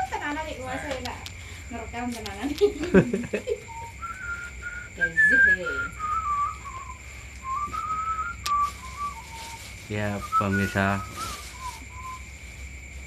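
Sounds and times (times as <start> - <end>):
person whistling: 3.7 - 12.3
person speaking: 9.9 - 11.2.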